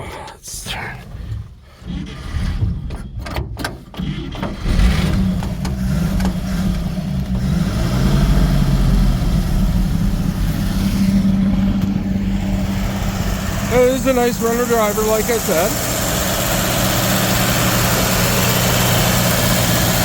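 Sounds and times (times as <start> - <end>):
truck engine cranking and idling: 0.0 - 20.0.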